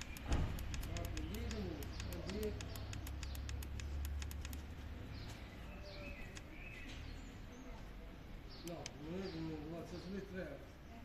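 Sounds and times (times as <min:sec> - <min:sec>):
rapid regular ticking: 0:00.0 - 0:04.7
birds chirping: 0:00.0 - 0:11.0.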